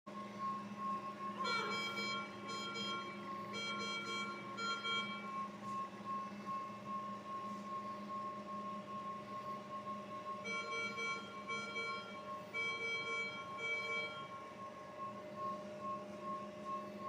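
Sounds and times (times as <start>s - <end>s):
low machine hum: 0.1s - 17.0s
steady high tone: 0.1s - 17.0s
short electronic alarm tones: 0.2s - 17.0s.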